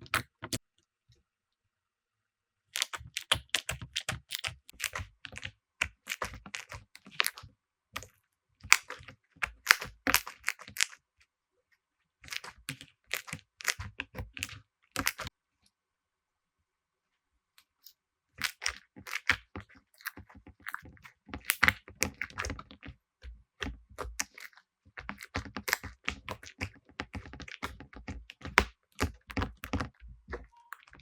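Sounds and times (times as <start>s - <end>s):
slime crackling and popping: 2.8s - 11.0s, 12.2s - 15.3s, 18.4s - 22.9s, 23.6s - 31.0s.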